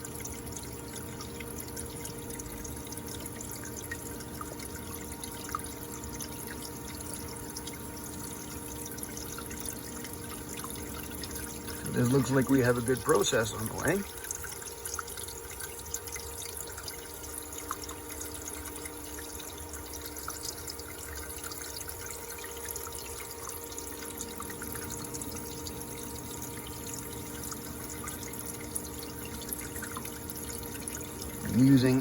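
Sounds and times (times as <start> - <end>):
liquid trickling and fizzing: 0.0 - 32.0
steady hum: 6.8 - 14.6.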